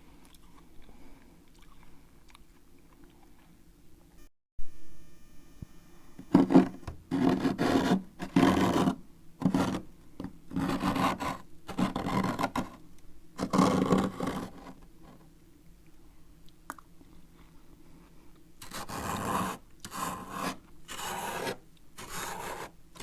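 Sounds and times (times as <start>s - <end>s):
spoon scraping frost: 6.2s - 9.8s, 18.6s - 23.0s.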